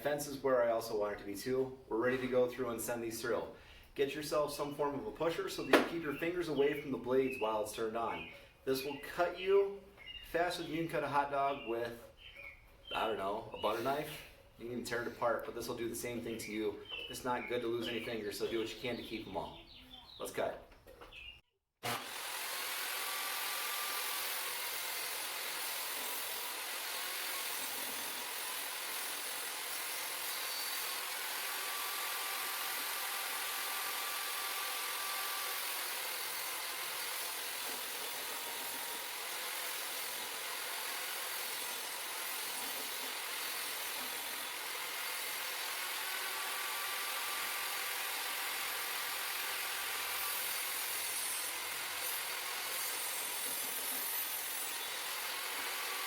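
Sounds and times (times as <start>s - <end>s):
table saw cutting wood: 5.7s - 6.0s, 21.8s - 56.0s.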